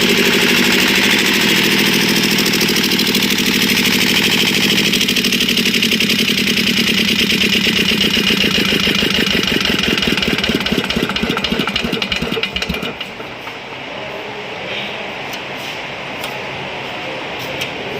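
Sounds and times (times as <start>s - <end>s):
diesel generator engine running: 0.0s - 14.2s.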